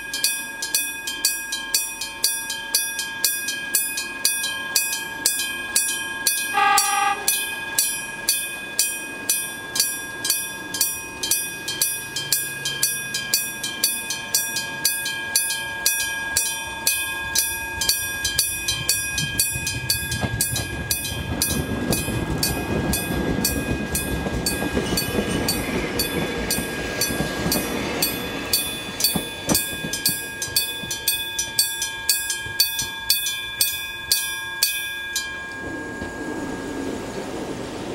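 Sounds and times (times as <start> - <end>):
level crossing bell ringing: 0.0 - 37.1
electric train passing: 0.0 - 37.9
short horn: 6.6 - 7.4.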